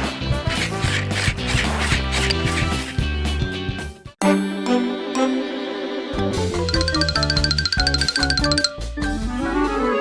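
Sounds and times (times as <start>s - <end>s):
background music with beat: 6.3s - 10.0s.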